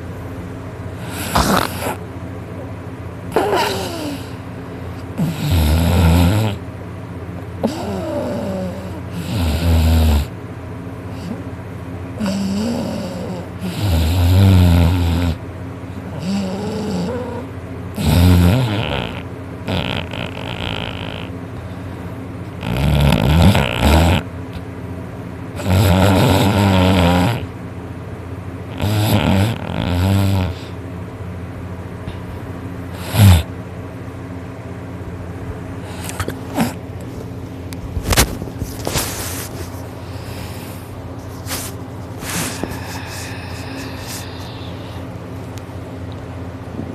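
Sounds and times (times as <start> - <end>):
steady low hum: 0.0 - 46.9
loud snoring: 1.0 - 2.0, 5.1 - 6.6, 7.6 - 10.3, 12.2 - 15.4, 16.1 - 21.3, 22.6 - 24.3, 25.6 - 27.5, 28.7 - 30.8, 32.9 - 33.5
sharp snort: 1.0 - 2.0, 33.0 - 33.5, 40.1 - 45.0.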